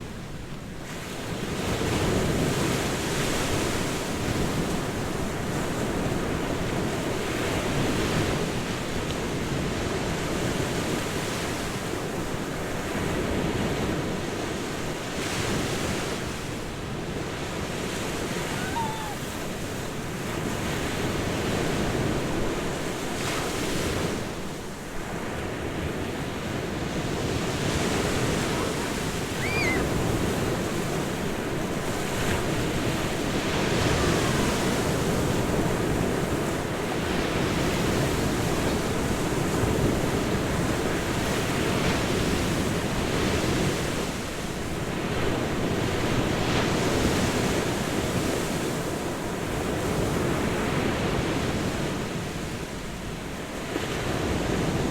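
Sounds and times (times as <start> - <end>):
ocean waves breaking: 11.4 - 45.1.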